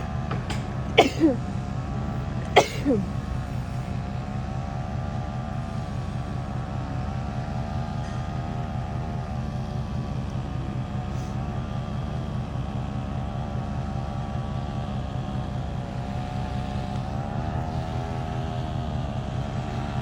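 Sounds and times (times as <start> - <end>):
small motor running steadily: 0.0 - 20.0.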